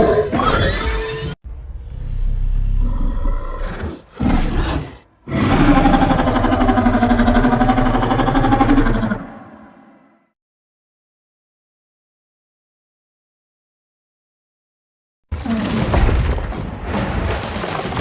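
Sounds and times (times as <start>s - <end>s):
creature growling: 1.8s - 10.2s
creature snarl: 2.7s - 10.2s.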